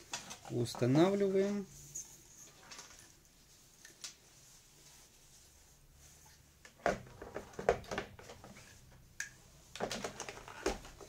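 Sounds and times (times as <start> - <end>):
plastic clicks and knocks: 9.8 - 11.0.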